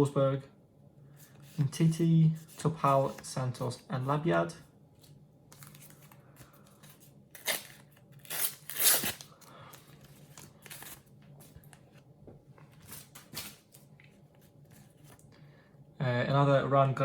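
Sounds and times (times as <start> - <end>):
foil packet tearing and crinkling: 5.6 - 11.1.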